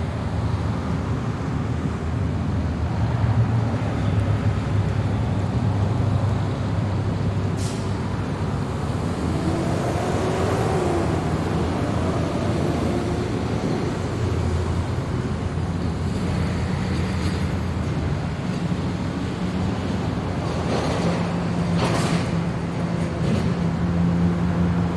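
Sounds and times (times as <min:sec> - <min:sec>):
road traffic rumble: 0:00.0 - 0:24.9
vehicles passing close: 0:00.0 - 0:24.9.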